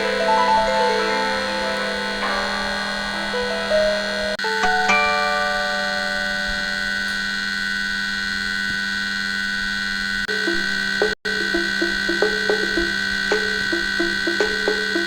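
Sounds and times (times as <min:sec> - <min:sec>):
bright repeated ringtone notes: 0:00.0 - 0:07.3, 0:10.3 - 0:15.0
held electronic ringtone chord: 0:00.0 - 0:08.1, 0:10.3 - 0:15.0.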